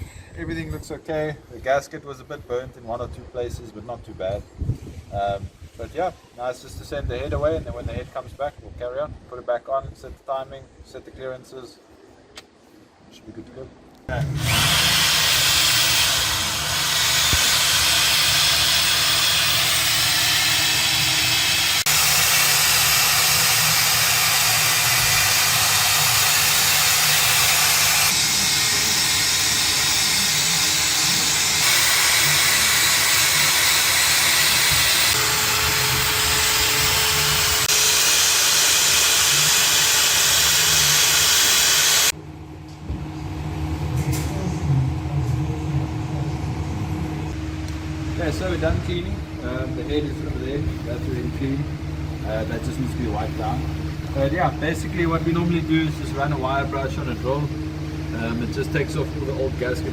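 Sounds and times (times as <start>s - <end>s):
drill with wire brush scrubbing metal: 14.1s - 42.1s.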